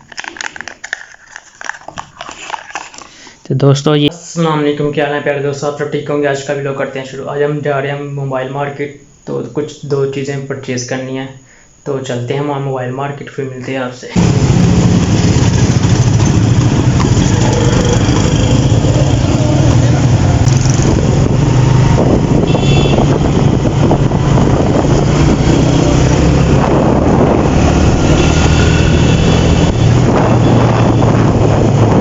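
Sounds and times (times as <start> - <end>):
road noise: 14.2 - 32.0
vehicle engine running: 14.2 - 32.0.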